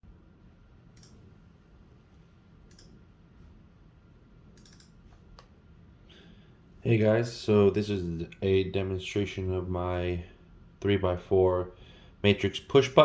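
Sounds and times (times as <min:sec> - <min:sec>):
faint sharp clicks: 0:00.9 - 0:01.3, 0:02.7 - 0:03.0, 0:04.6 - 0:05.6.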